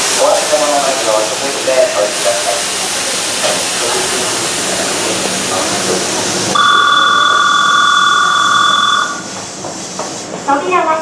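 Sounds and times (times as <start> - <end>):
steady hiss: 0.0 - 10.8
electric departure bell ringing: 6.6 - 9.3.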